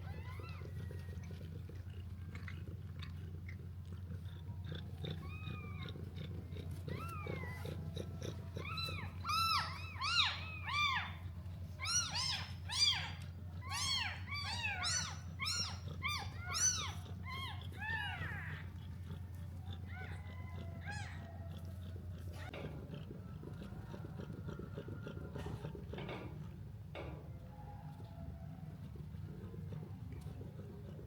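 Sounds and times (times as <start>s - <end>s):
kittens mewing: 4.0s - 26.3s.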